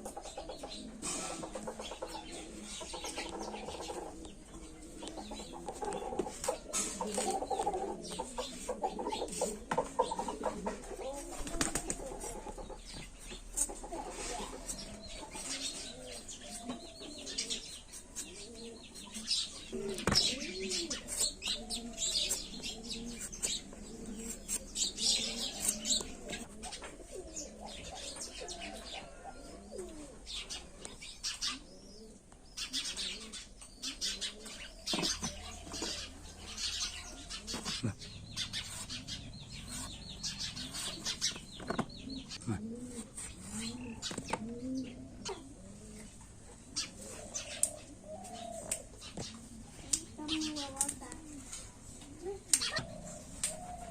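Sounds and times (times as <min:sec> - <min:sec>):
low curved bird calls: 0:00.0 - 0:53.9
high bird chirps: 0:34.9 - 0:42.4.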